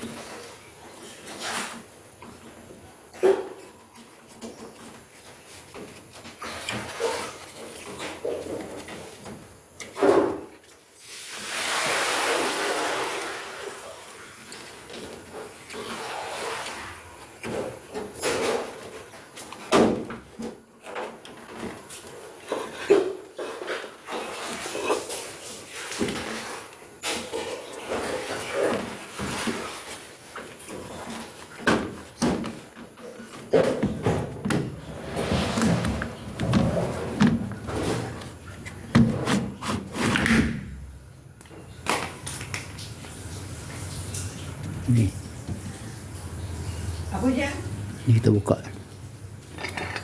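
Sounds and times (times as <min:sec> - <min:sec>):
parts knocking and scraping: 0:31.0 - 0:40.5, 0:49.4 - 0:50.0.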